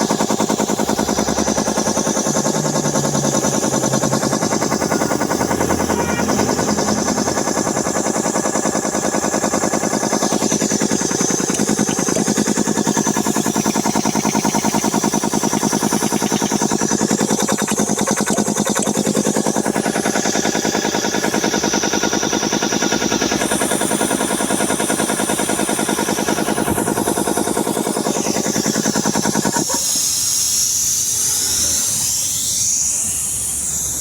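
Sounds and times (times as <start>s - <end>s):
air compressor pump pulsing: 0.0s - 34.0s
hiss of escaping air: 29.7s - 34.0s.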